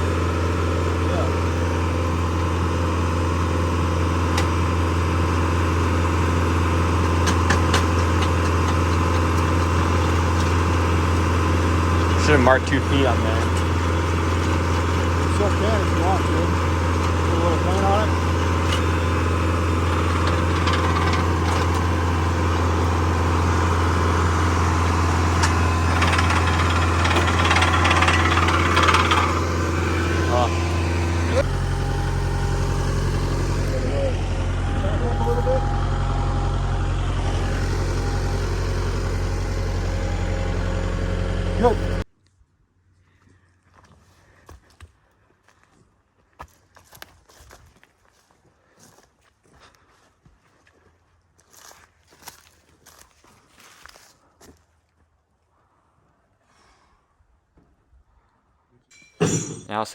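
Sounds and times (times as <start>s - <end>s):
tractor engine running: 0.0s - 42.1s.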